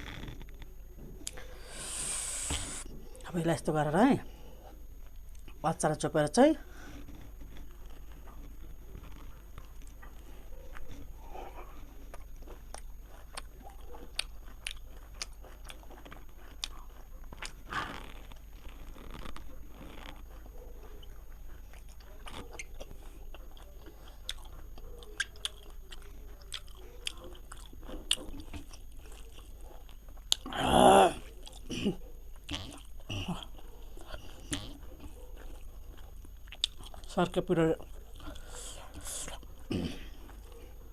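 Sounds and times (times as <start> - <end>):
person chewing food: 0.0 - 3.2, 6.7 - 40.9
small crunches and mouth clicks: 4.9 - 5.6, 6.8 - 40.9.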